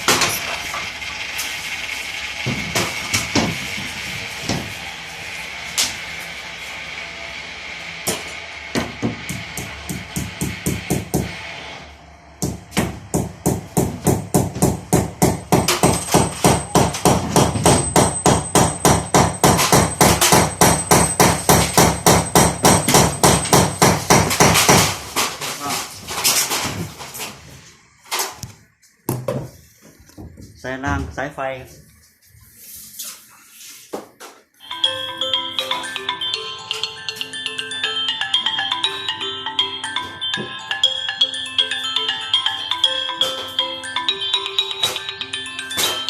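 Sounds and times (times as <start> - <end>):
hammer blows: 12.4 - 25.0.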